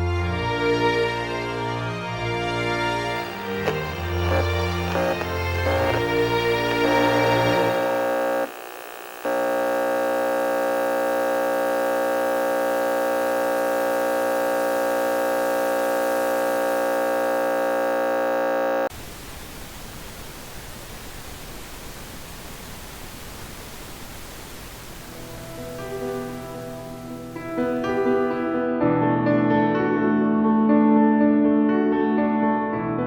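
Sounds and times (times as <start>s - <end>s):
buzzy electronic tone: 3.2s - 20.2s
static hiss: 3.2s - 28.3s.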